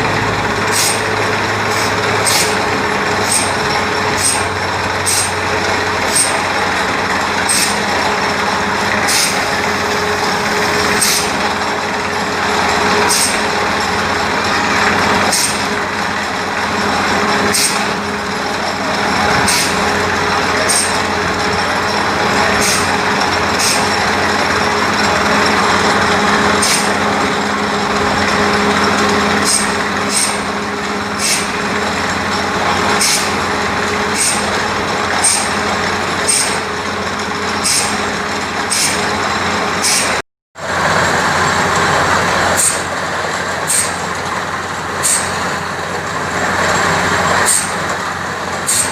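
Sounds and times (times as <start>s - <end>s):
drilling rig engine: 0.0s - 48.9s
compressed-air hiss: 31.2s - 31.5s.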